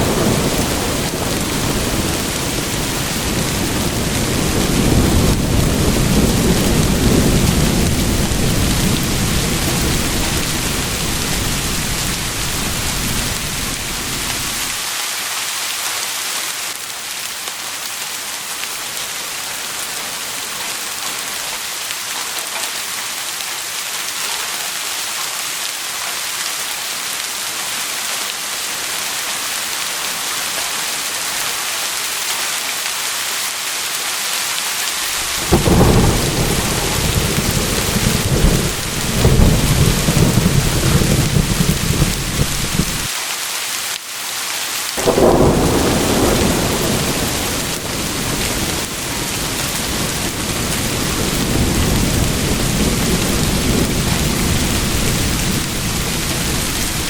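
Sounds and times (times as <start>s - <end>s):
rolling thunder: 0.0s - 14.8s, 35.1s - 43.1s, 45.0s - 57.0s
steady rain: 0.0s - 57.0s.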